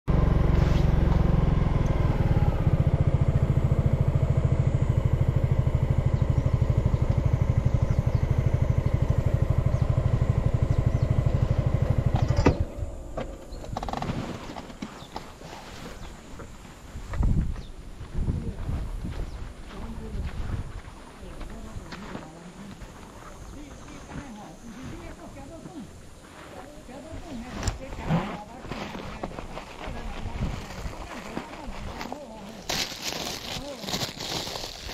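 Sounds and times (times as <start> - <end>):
small engine running: 0.1 - 14.4, 27.6 - 34.9.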